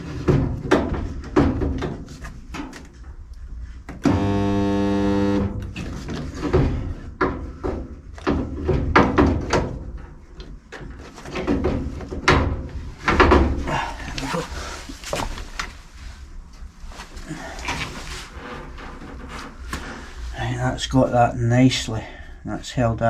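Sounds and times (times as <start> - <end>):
spot welder buzz: 4.0 - 5.8.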